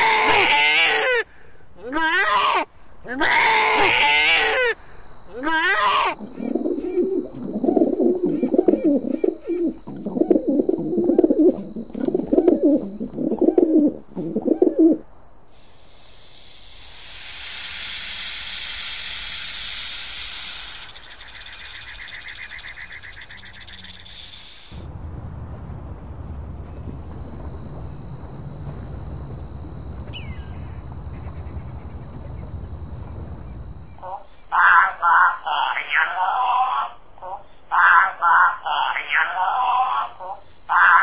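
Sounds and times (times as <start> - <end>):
pigeon cooing: 5.4 - 15.0
long hiss: 15.4 - 24.9
low rumble: 24.2 - 34.0.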